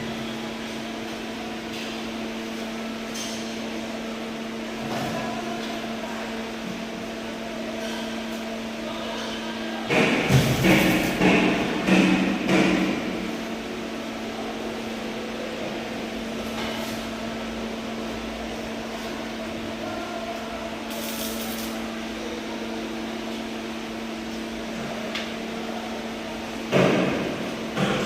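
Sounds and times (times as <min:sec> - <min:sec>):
welding machine hum: 0:09.9 - 0:15.2, 0:16.0 - 0:27.8
welding hiss: 0:20.9 - 0:21.9.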